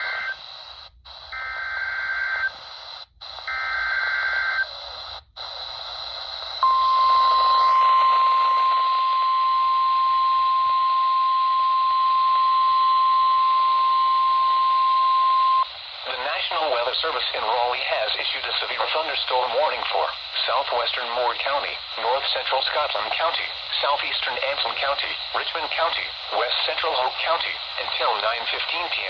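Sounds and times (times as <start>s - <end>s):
radio static hiss: 0.0s - 29.0s
steady alarm tone: 6.5s - 15.6s.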